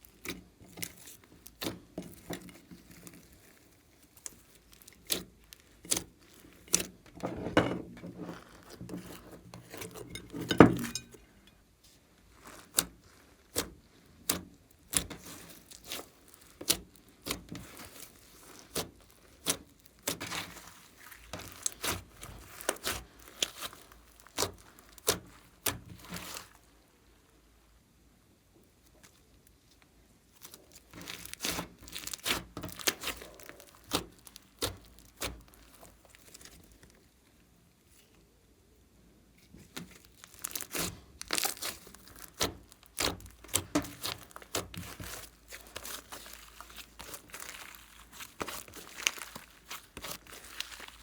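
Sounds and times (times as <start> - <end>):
slime clicking and crackling: 0.0 - 7.1, 12.3 - 26.8, 30.3 - 37.1, 39.6 - 51.0.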